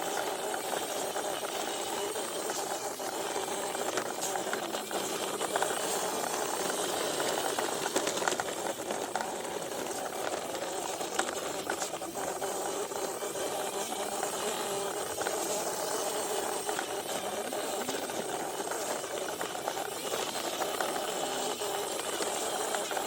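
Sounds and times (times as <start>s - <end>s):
small electric motor rattling hum: 0.0s - 23.0s.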